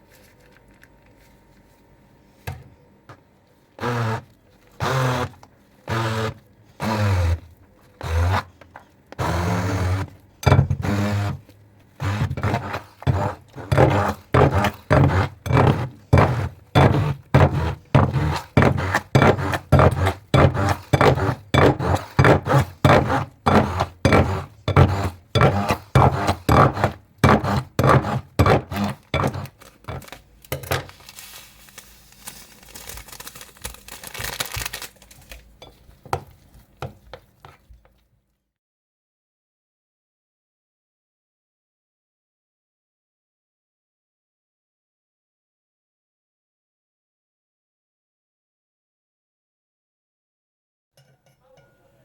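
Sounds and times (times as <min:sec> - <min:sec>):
whisking in a bowl: 0:12.0 - 0:30.1.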